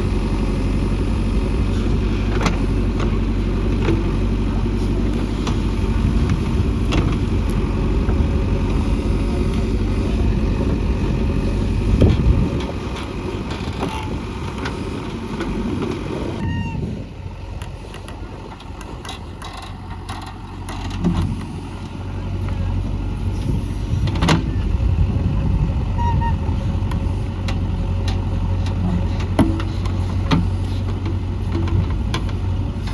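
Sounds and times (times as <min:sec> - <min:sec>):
diesel engine running: 0:00.0 - 0:32.9
machine knocks and clanks: 0:27.5 - 0:32.9.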